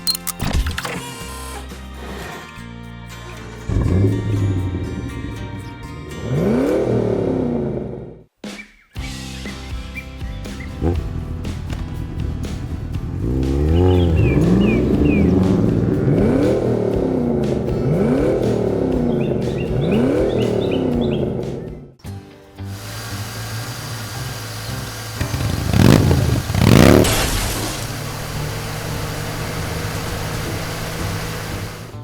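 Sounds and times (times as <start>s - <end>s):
background music: 0.0s - 7.4s, 9.0s - 24.8s
cartoon car engine revving: 3.7s - 8.3s, 10.7s - 21.8s, 22.7s - 32.0s.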